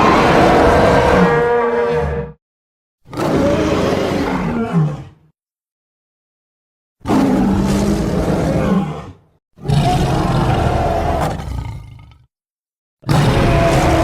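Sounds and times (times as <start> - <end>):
dragon roar: 0.0 - 2.4, 7.0 - 12.2, 13.0 - 14.0.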